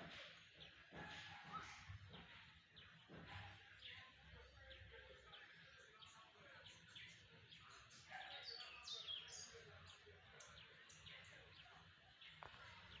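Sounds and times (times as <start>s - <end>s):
birds chirping: 0.0s - 13.0s.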